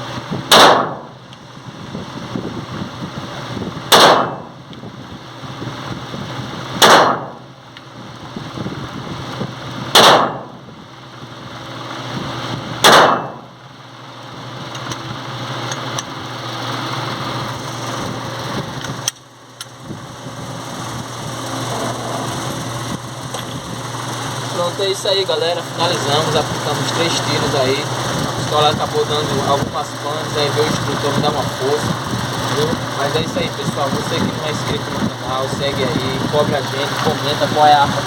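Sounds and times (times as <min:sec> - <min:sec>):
steady low hum: 0:00.0 - 0:38.0
pistol shots echoing: 0:00.5 - 0:01.1, 0:03.9 - 0:04.5, 0:06.8 - 0:07.4, 0:09.9 - 0:10.6, 0:12.8 - 0:13.4.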